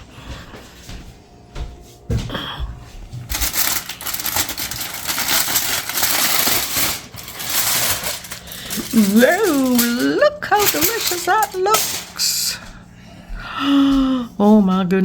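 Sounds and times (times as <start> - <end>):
wrapping crinkling open: 3.2 - 12.5.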